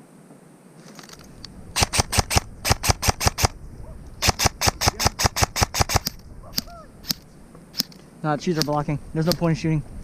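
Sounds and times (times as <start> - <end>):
airsoft gun shots: 1.8 - 3.6, 4.2 - 7.2.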